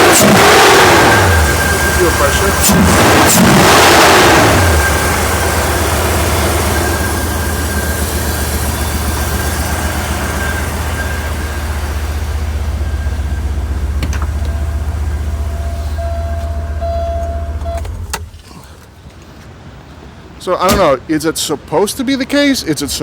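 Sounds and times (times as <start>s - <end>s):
car engine idling with misfire: 0.0s - 18.7s.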